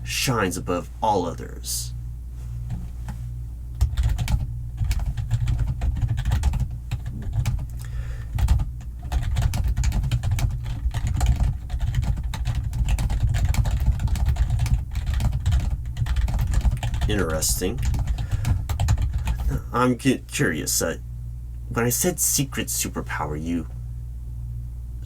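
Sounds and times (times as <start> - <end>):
steady low hum: 0.0 - 25.0
typing on computer keyboard: 3.8 - 7.7, 8.4 - 19.4.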